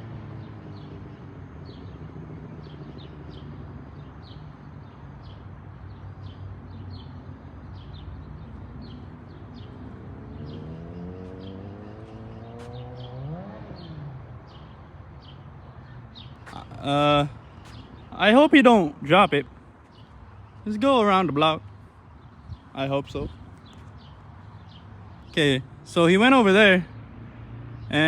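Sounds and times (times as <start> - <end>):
birds chirping: 0.3 - 28.0
motorcycle engine revving: 9.6 - 14.8.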